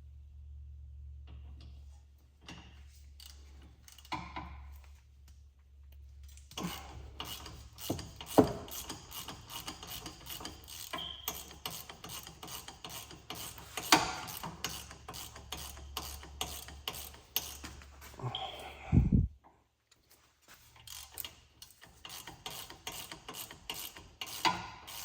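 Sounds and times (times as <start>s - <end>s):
ratchet clicking: 6.3s - 17.8s, 20.8s - 25.0s.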